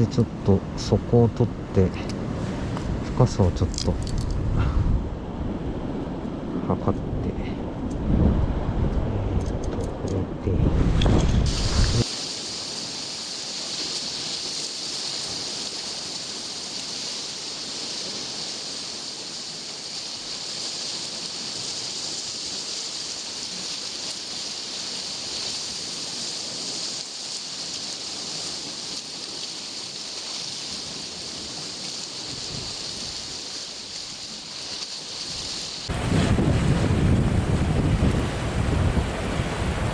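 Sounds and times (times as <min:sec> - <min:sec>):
sea surf on rocky shore: 0:10.8 - 0:39.9.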